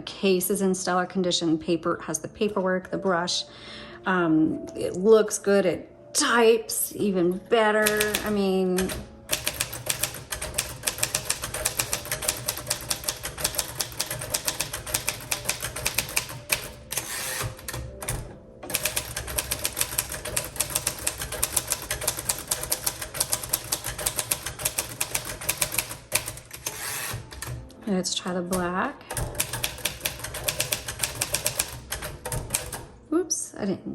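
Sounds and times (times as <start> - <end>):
typewriter key strikes: 7.8 - 27.8, 28.4 - 32.9.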